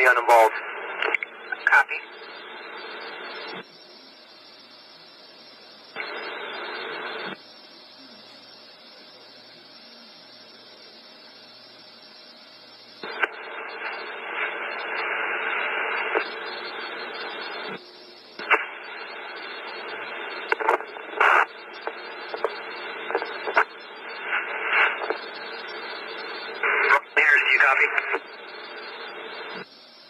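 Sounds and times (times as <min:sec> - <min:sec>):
radio click: 0:00.0 - 0:02.0, 0:13.0 - 0:17.8, 0:18.4 - 0:29.7
radio static hiss: 0:00.0 - 0:30.0
scattered pops and clicks: 0:00.9 - 0:01.7, 0:13.0 - 0:17.8, 0:18.4 - 0:28.4.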